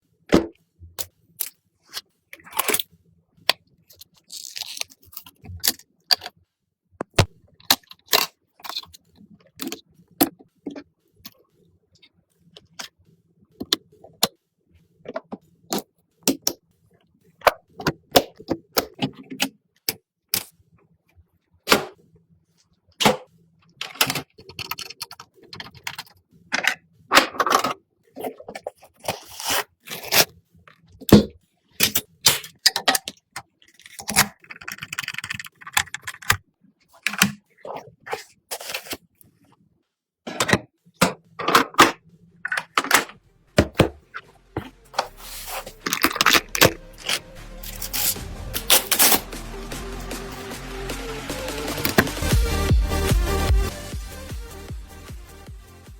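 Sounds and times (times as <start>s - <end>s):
computer parts clicking and scraping: 33.7s - 37.4s, 44.6s - 49.3s.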